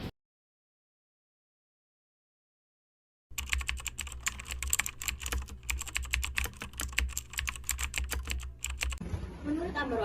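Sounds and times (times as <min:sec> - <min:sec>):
keyboard typing: 0:03.3 - 0:09.0.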